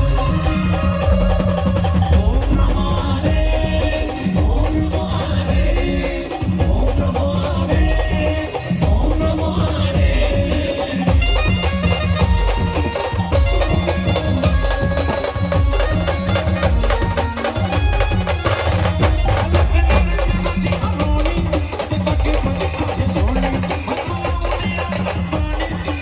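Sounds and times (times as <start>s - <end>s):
clacking percussion: 0.0s - 26.0s
heavy drum beat: 0.0s - 26.0s
brass melody: 11.0s - 20.7s.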